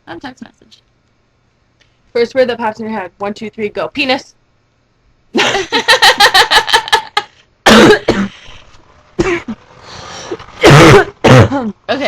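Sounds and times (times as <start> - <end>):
woman laughing: 5.4 - 7.4
loud throaty belch: 7.7 - 8.2, 10.6 - 11.7.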